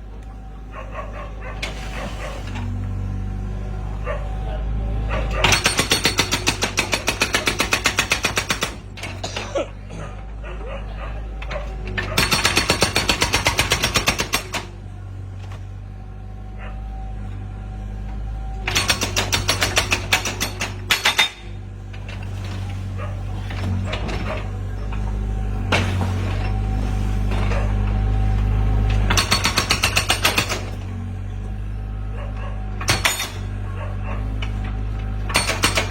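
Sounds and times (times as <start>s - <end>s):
low engine hum: 0.0s - 5.6s, 14.4s - 35.9s
hydraulic hammer pounding rock: 5.3s - 10.0s, 11.5s - 14.8s, 18.6s - 25.0s, 25.6s - 27.7s, 28.9s - 31.1s, 32.4s - 35.9s.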